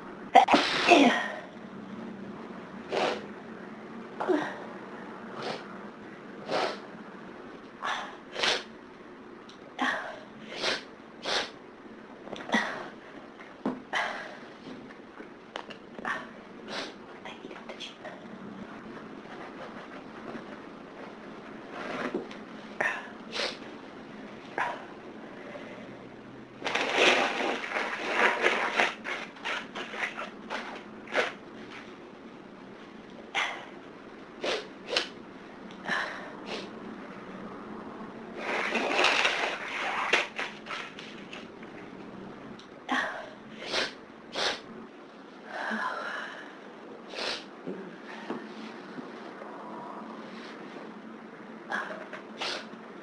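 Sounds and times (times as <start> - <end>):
person sneezing: 0.4 - 1.4
dense rustling noise: 18.3 - 24.6, 26.5 - 33.1, 38.1 - 42.2.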